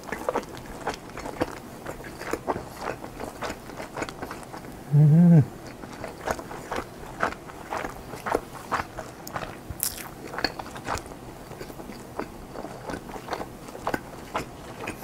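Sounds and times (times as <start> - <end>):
chewing with wet mouth clicks: 0.0 - 4.8, 5.6 - 15.0
crisp crunch: 8.7 - 10.2.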